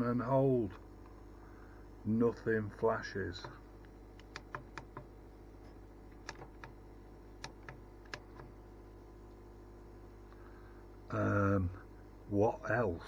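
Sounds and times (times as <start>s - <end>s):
faint steady hum: 0.0s - 13.0s
plastic buttons clicking: 4.2s - 5.1s, 6.2s - 6.8s.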